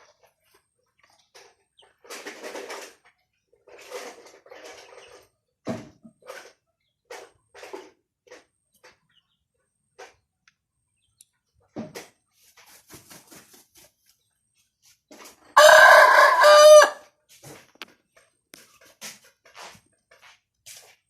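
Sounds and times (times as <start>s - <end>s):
rooster crowing: 15.6s - 17.0s.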